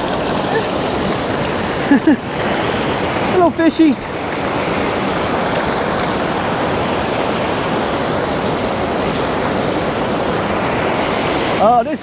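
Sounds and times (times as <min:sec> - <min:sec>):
stream rushing over waterfalls: 0:00.0 - 0:12.0.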